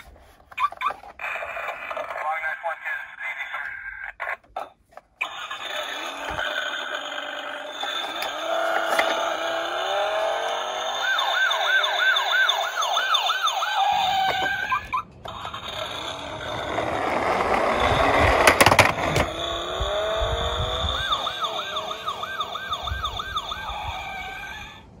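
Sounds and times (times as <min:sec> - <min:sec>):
toy sirens sounding: 0:00.0 - 0:25.0
fast electronic siren yelp: 0:05.2 - 0:18.2, 0:19.2 - 0:24.9.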